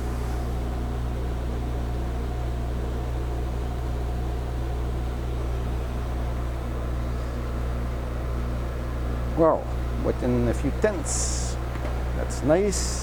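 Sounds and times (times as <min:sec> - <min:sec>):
metal lathe humming: 0:00.0 - 0:02.0, 0:04.7 - 0:13.0.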